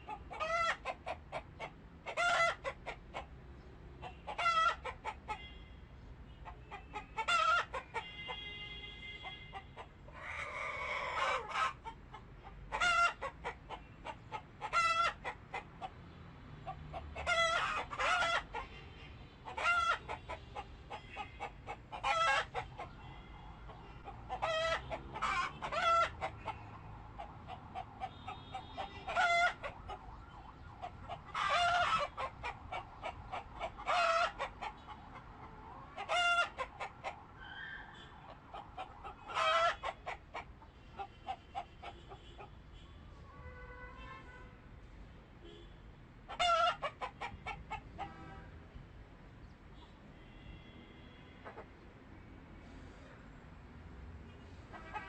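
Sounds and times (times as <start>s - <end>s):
poultry calling: 19.5s - 42.5s.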